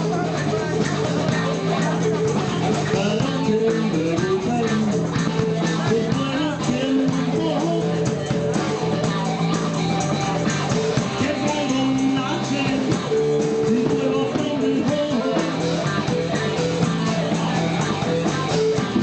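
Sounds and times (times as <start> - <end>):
blues-rock band playing: 0.0 - 19.0
guitar melody: 0.0 - 19.0.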